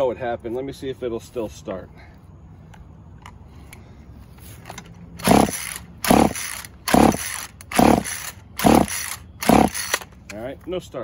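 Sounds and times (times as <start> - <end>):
chainsaw recoil starter pulls: 5.2 - 10.1
engine turning over: 5.2 - 10.1.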